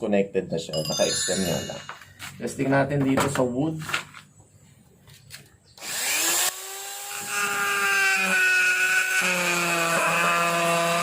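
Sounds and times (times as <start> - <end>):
rotary tool whining: 5.8 - 11.0.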